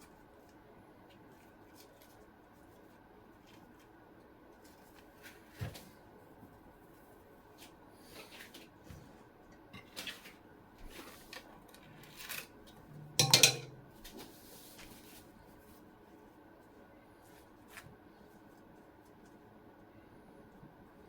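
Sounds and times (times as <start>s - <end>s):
dish clattering down: 13.2s - 13.9s
dishes and utensils tapping: 13.2s - 14.1s.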